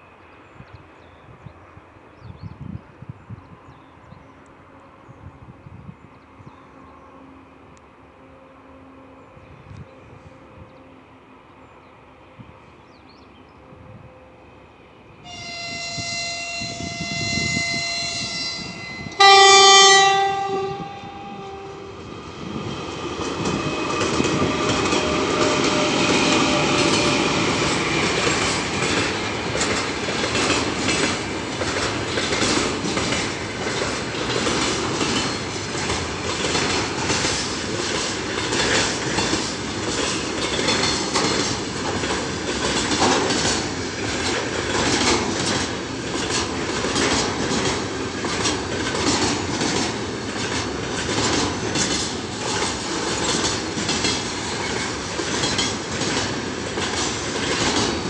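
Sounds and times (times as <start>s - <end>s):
train rumble: 0.0s - 58.0s
freight train wheels clattering: 22.0s - 58.0s.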